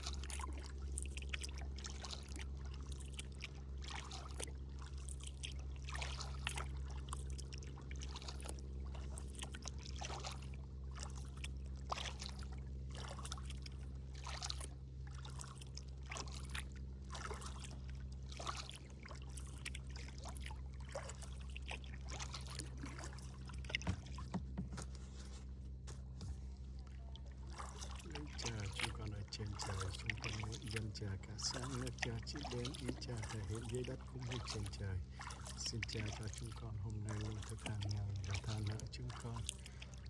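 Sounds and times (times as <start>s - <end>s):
paddle strokes in water: 0.0s - 40.0s
steady low hum: 0.0s - 40.0s
water dripping: 26.8s - 40.0s.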